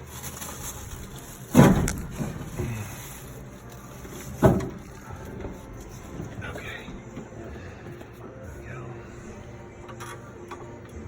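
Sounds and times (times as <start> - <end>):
fuel tank knocking against frame: 1.4 - 8.1.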